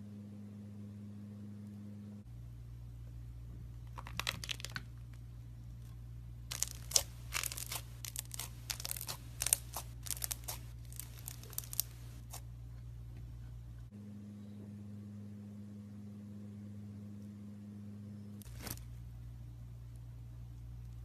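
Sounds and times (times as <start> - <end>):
slime crackling and popping: 3.9 - 4.9, 6.5 - 12.4.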